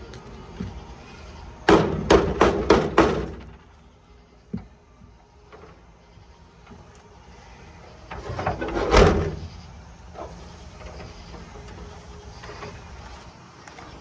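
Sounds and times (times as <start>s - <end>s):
metal scraping and rattling: 7.7s - 14.0s.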